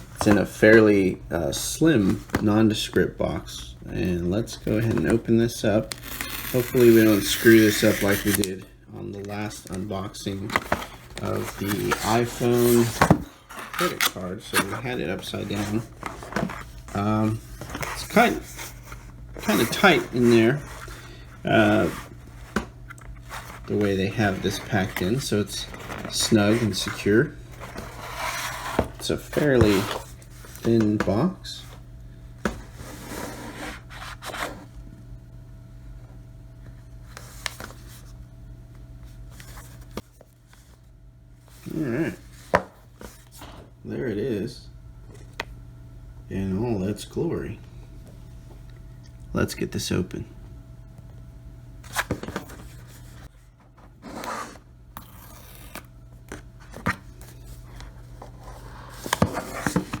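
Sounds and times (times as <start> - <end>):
steady low hum: 0.0 - 60.0
cardboard scraping and rustling: 4.6 - 8.6, 9.2 - 31.8, 32.4 - 34.7, 51.8 - 60.0.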